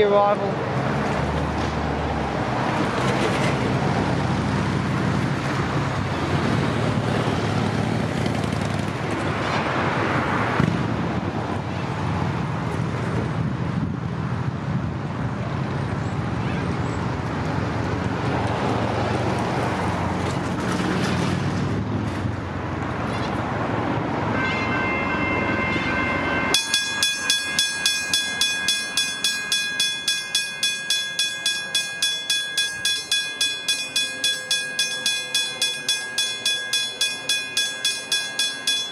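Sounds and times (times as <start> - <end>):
train arriving: 0.0 - 10.4, 24.7 - 38.9
road traffic: 0.0 - 38.9
crossing warning bells ringing: 24.2 - 38.9.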